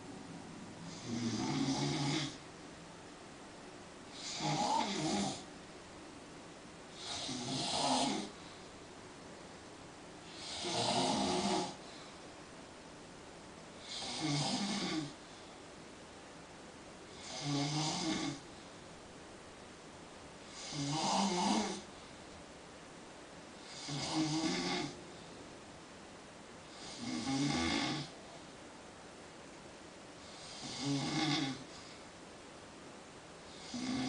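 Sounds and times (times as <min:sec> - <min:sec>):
man snoring: 0:00.9 - 0:02.4, 0:04.1 - 0:05.5, 0:06.9 - 0:08.4, 0:10.2 - 0:11.8, 0:13.8 - 0:15.2, 0:17.1 - 0:18.4, 0:20.5 - 0:21.9, 0:23.6 - 0:25.0, 0:26.7 - 0:28.2, 0:30.2 - 0:32.0, 0:33.5 - 0:34.0.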